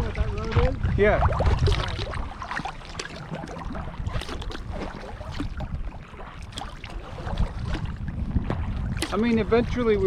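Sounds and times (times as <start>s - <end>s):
paddle splashing water: 0.1s - 10.0s.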